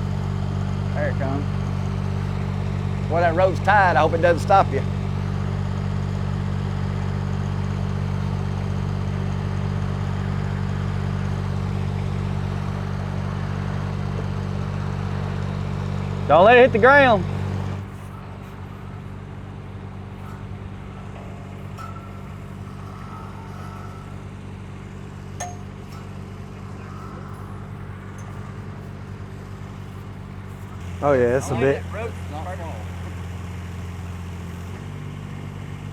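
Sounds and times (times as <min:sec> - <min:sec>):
engine idling with low hum: 0:00.0 - 0:35.9
metallic clink: 0:17.8 - 0:30.8.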